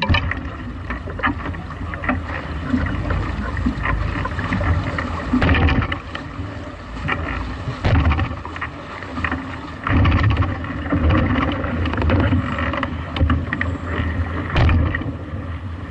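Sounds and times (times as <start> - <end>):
water splashing: 0.0 - 15.9
knocks and rattles: 7.8 - 8.4.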